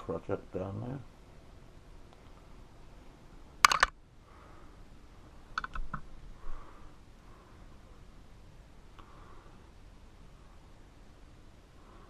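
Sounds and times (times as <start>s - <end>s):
small hard objects clicking: 3.6s - 4.0s, 5.6s - 6.1s.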